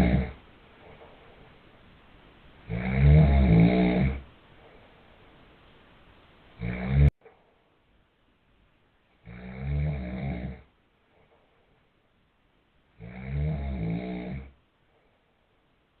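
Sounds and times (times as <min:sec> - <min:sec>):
man snoring: 0:00.0 - 0:00.4, 0:02.7 - 0:04.2, 0:06.6 - 0:07.1, 0:09.3 - 0:10.6, 0:13.0 - 0:14.5.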